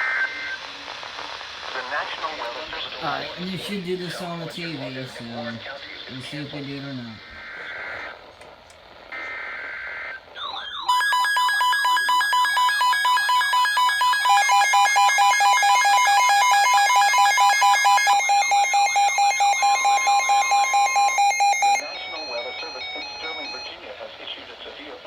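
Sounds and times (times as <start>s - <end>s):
steady attention tones: 3.0s - 7.9s, 10.9s - 23.9s
warbling siren-like alert tone: 10.4s - 23.8s
header data tones: 10.9s - 23.9s.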